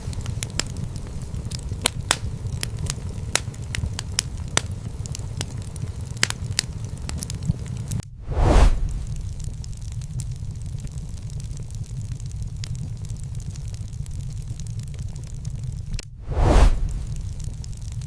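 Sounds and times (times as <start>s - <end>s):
low steady rumble: 0.0s - 18.0s
wood fire crackling and popping: 0.0s - 18.0s
loud whoosh: 8.1s - 9.5s, 16.2s - 17.5s.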